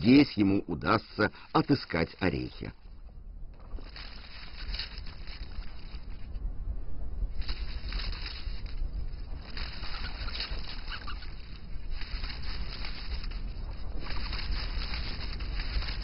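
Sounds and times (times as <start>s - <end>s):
steady low rumble: 0.0s - 16.0s
rodent scrabbling through snow: 3.6s - 6.4s, 7.2s - 16.0s.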